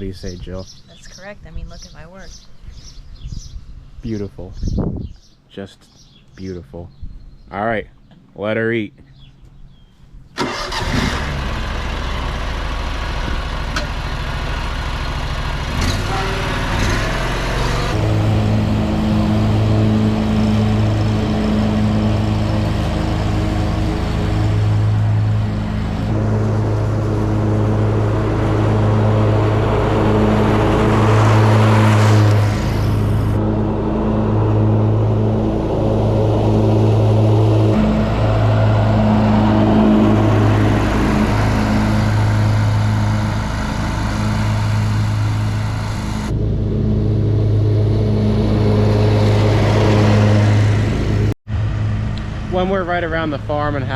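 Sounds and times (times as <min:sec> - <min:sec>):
lawn mower engine running: 0:10.4 - 0:53.9.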